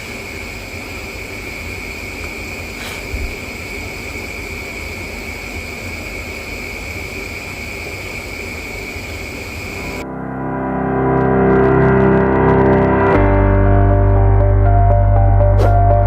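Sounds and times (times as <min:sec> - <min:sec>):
steady hiss: 0:00.0 - 0:10.0
high-pitched whine: 0:00.0 - 0:16.0
low rumble: 0:09.9 - 0:16.0.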